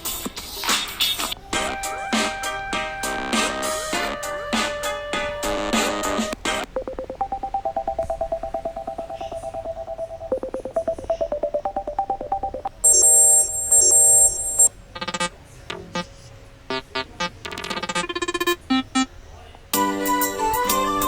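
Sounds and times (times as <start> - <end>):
buzzy ring bursts: 1.4 - 6.6
pulsing electronic ringtone melody: 1.4 - 15.8, 17.5 - 19.1.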